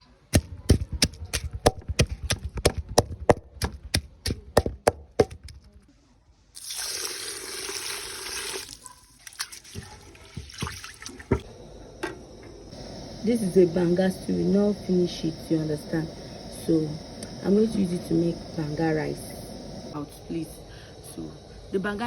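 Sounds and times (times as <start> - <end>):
water running from a tap: 6.6 - 11.5.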